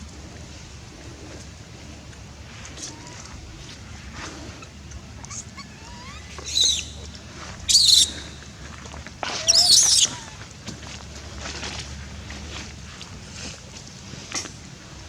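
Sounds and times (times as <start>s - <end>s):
baby monkey screaming: 5.2s - 7.1s, 7.7s - 8.3s, 9.3s - 10.4s.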